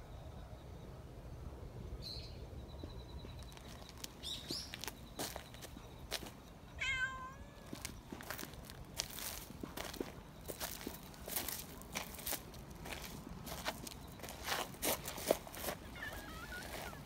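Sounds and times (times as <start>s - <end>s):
kittens meowing: 6.8s - 7.9s, 15.8s - 17.0s.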